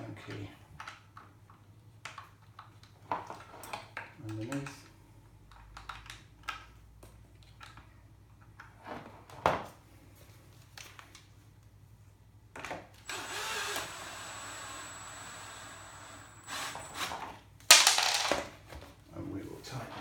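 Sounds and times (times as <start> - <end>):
cordless drill running: 13.0 - 17.2.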